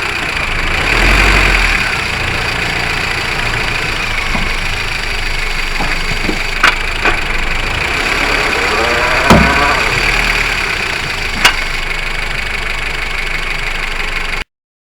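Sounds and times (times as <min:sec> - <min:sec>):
car running noise: 0:00.0 - 0:14.4
sharp knocks from wheel area: 0:02.0 - 0:11.9.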